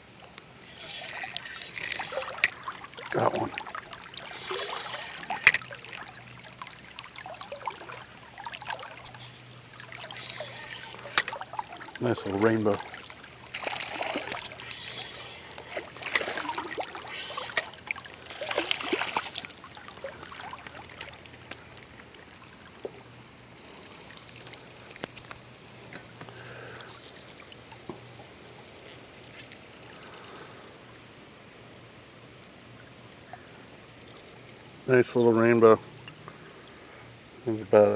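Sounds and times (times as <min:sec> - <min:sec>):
river water flowing: 0:00.0 - 0:37.6
water splashing: 0:00.5 - 0:28.2.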